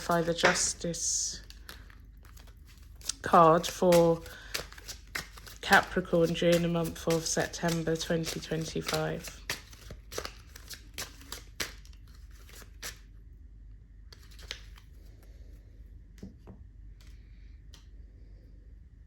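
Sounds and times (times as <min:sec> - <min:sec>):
cards being shuffled: 0:00.0 - 0:13.0, 0:14.1 - 0:14.9.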